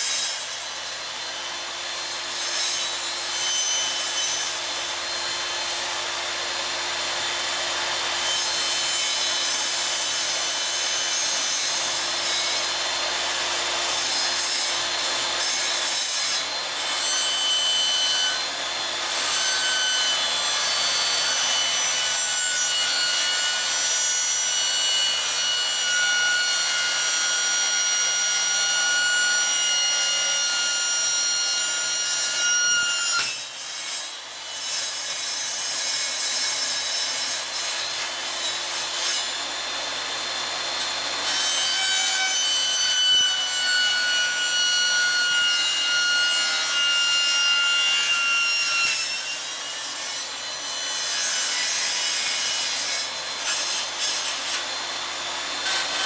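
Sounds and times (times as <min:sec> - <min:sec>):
power tool whine: 0:43.3 - 0:56.0.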